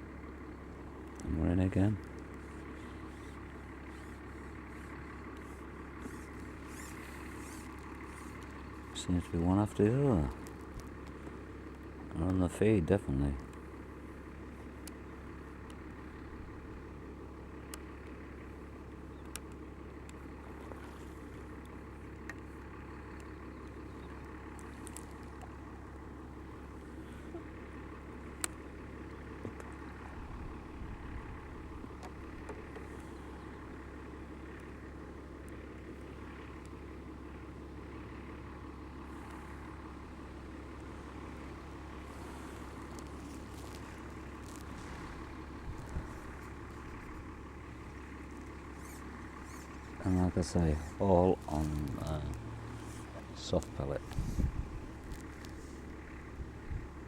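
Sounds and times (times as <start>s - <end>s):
low mechanical hum: 0.0s - 57.0s
faint sharp clicks: 19.2s - 25.6s.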